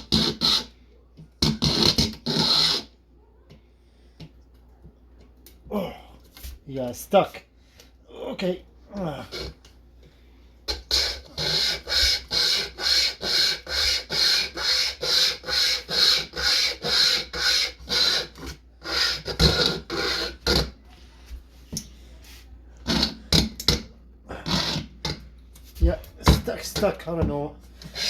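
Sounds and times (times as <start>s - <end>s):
pocket chainsaw rasping through wood: 10.7s - 20.7s.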